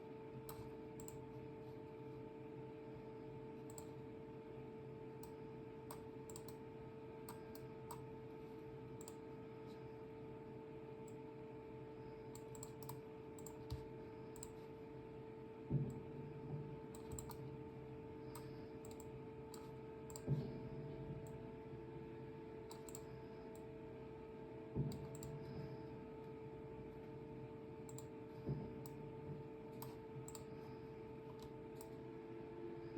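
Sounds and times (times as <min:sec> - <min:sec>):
electrical hum: 0:00.0 - 0:32.9
faint mouse clicks: 0:00.4 - 0:01.3, 0:03.6 - 0:04.0, 0:05.2 - 0:06.6, 0:07.2 - 0:08.1, 0:09.0 - 0:09.8, 0:12.3 - 0:14.7, 0:16.9 - 0:17.5, 0:18.2 - 0:20.3, 0:22.6 - 0:23.7, 0:24.9 - 0:25.6, 0:27.8 - 0:28.2, 0:29.8 - 0:30.6, 0:31.3 - 0:32.0.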